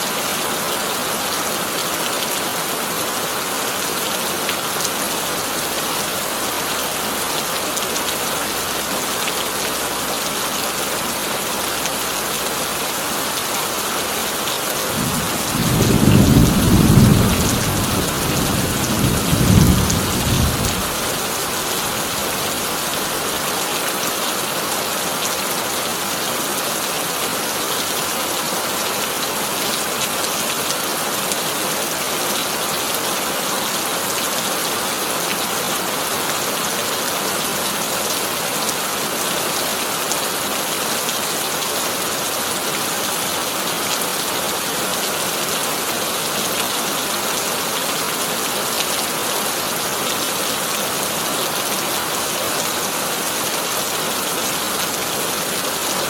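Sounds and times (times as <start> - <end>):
heavy rain on a tin roof: 0.0 - 56.0
thunder rumble: 14.9 - 21.4.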